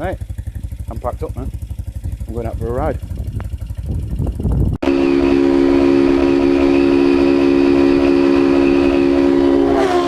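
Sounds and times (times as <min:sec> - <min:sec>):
motorcycle engine running: 0:00.0 - 0:10.0
steady drone of held tones: 0:04.8 - 0:10.0.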